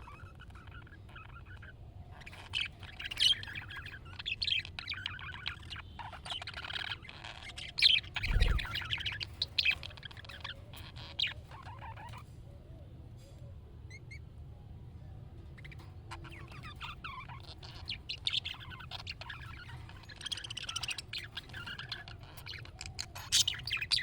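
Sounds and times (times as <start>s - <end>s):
budgerigar warbling and chattering: 0.0s - 12.3s, 15.4s - 24.0s
short low thump: 8.2s - 8.8s.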